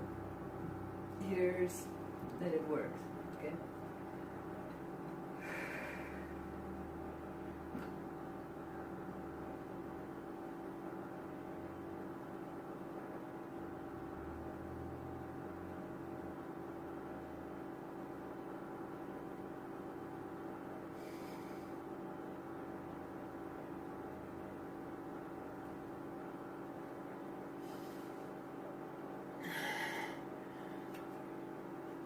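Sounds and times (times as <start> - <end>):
low mechanical hum: 0.0 - 32.0.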